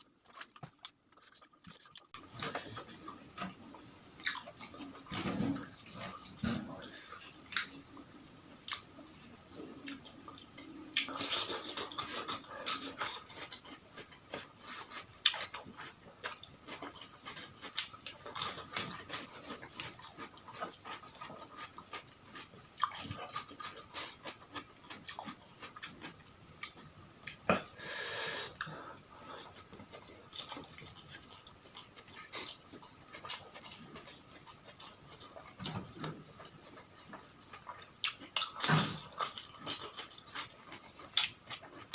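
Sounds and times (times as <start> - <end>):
chewing and mouth smacks: 0.2 - 3.5, 9.8 - 27.4, 29.4 - 41.9.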